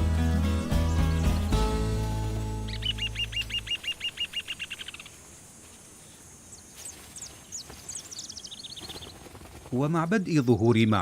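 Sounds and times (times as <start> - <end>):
low background music: 0.0 - 3.8
bird rattling song: 2.6 - 5.2, 6.4 - 10.0.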